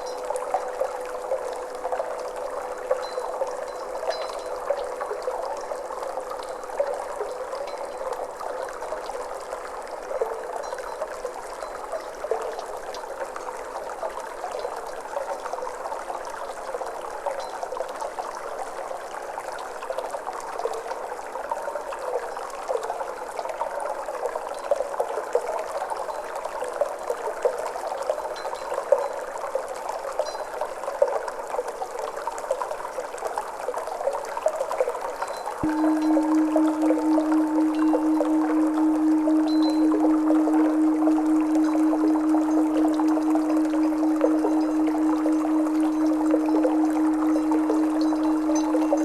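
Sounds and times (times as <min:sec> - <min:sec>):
water trickling and gurgling: 0:35.6 - 0:49.0.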